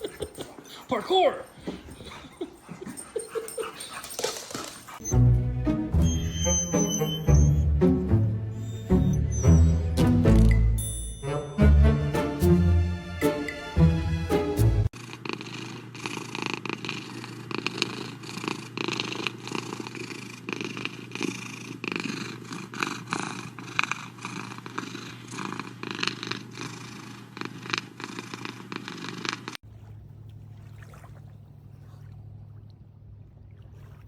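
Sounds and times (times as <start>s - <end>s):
cat purring: 15.0s - 29.6s.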